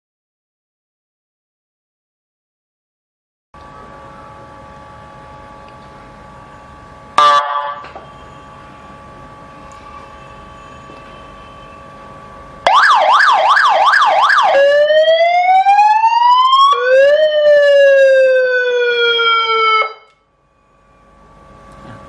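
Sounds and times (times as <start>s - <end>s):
faint steady hum: 3.6s - 15.4s
vehicle siren yelp and wail: 7.2s - 8.0s, 12.6s - 20.2s.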